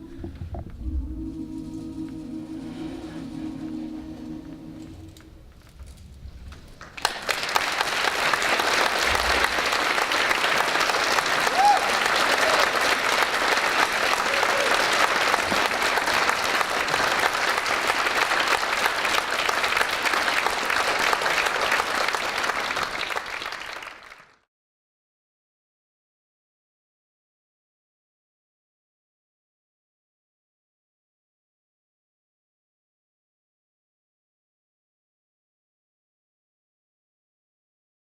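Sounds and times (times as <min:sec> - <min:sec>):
faint low rumble: 0:00.0 - 0:06.9
choir holding a chord: 0:00.8 - 0:05.4
audience response: 0:07.0 - 0:24.0.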